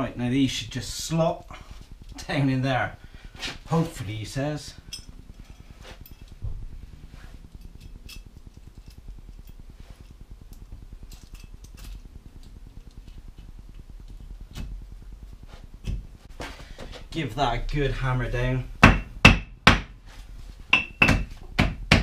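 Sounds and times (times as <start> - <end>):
low steady hum: 0.0 - 22.0
light metal clinks and taps: 4.9 - 6.4.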